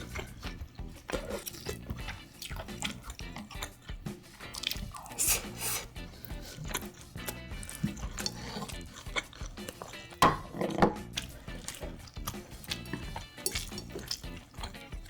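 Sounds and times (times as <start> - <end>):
chewing and slurping: 0.0 - 15.0
cutlery clicking against dishes: 12.3 - 15.0.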